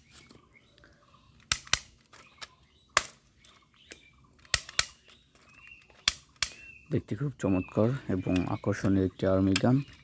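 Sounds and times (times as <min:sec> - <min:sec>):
toy gun plastic clicks: 0:01.4 - 0:03.2, 0:03.9 - 0:05.2.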